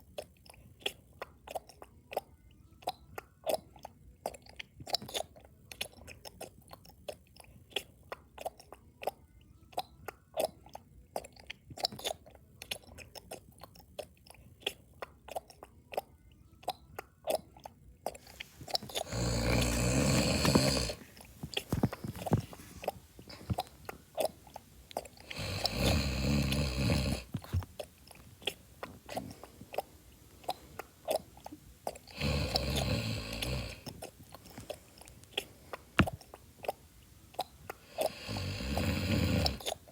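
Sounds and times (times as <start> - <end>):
person chewing loudly: 0.0 - 39.9
person snoring: 18.8 - 23.7, 25.2 - 27.5, 32.1 - 33.9, 37.8 - 39.8.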